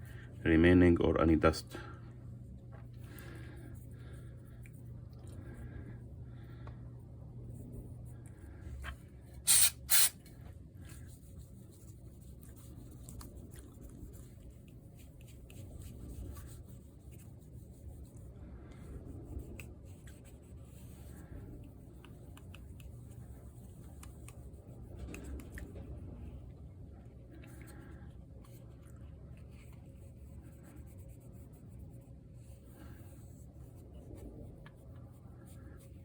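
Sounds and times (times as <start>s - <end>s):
short bursts of hiss: 9.5s - 10.2s.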